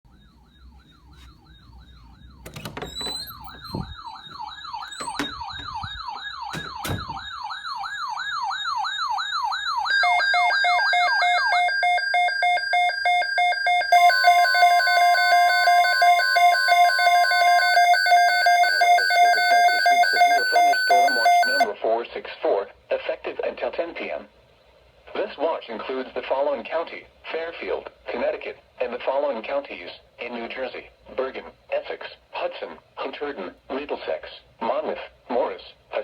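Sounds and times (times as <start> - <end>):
electronic siren wailing: 0.1 - 21.7
heavy thumps: 2.4 - 7.5.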